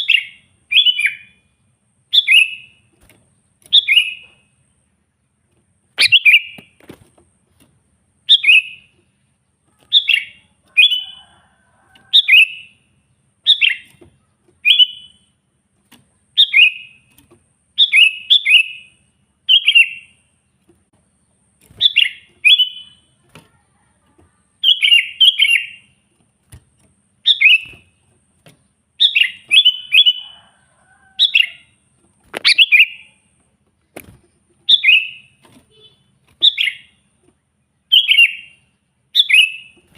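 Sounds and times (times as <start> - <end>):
bulbul singing: 0.0 - 1.5, 2.1 - 2.9, 3.6 - 4.5, 5.9 - 6.8, 8.2 - 9.0, 9.7 - 15.4, 16.3 - 17.2, 17.8 - 20.3, 21.2 - 23.6, 24.2 - 26.0, 27.2 - 28.1, 29.0 - 33.3, 34.0 - 37.2, 37.8 - 39.9.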